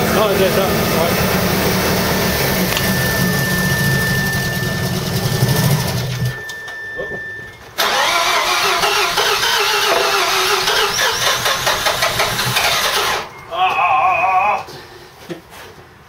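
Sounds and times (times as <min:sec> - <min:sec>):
rotary engine running rough: 0:00.0 - 0:06.3, 0:07.8 - 0:13.2.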